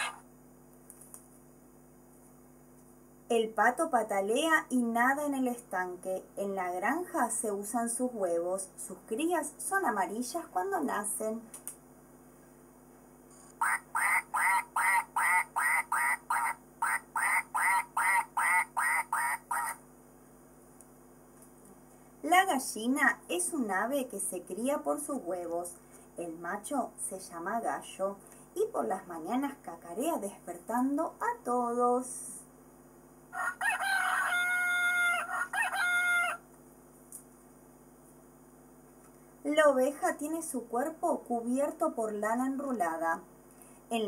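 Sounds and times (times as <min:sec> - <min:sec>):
ducks quacking: 0:00.0 - 0:00.2, 0:13.6 - 0:19.8
rooster crowing: 0:00.0 - 0:00.2, 0:13.6 - 0:19.8, 0:33.3 - 0:36.5.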